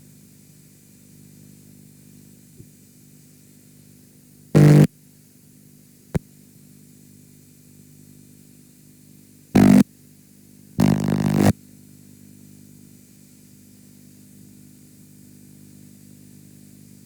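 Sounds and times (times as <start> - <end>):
low hum with faint hiss: 0.0 - 17.0
distorted buzzing noise bursts: 4.6 - 4.9, 9.6 - 9.8, 10.8 - 11.5.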